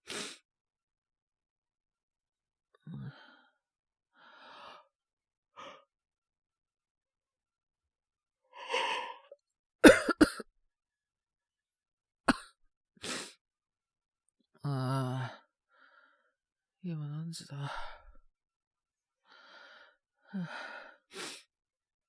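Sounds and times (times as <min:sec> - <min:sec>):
man coughing: 0:09.8 - 0:10.4.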